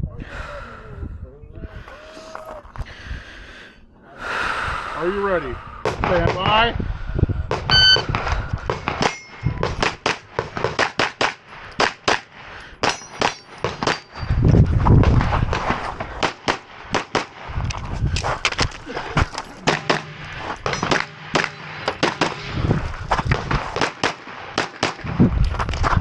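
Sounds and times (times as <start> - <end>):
pistol shots: 16.2 - 17.4, 19.7 - 22.5, 23.7 - 25.1
low rumble: 17.5 - 23.8.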